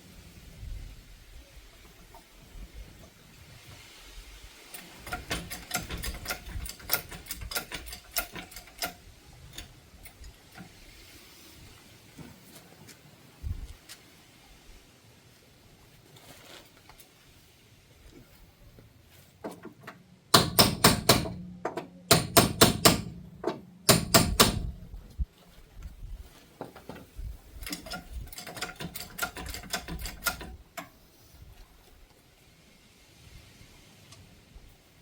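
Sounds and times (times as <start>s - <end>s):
hammer striking metal: 20.3s - 24.8s.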